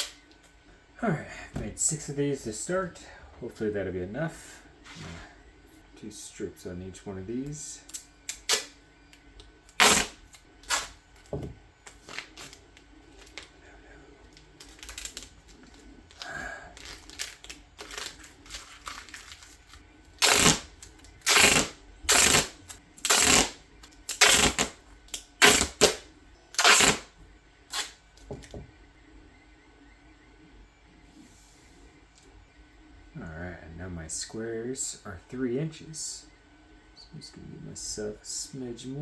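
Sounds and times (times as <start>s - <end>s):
duct tape ripping: 7.9s - 8.7s, 9.7s - 11.0s, 11.9s - 12.6s, 14.6s - 15.3s, 16.1s - 26.0s, 26.6s - 27.1s, 27.7s - 28.0s.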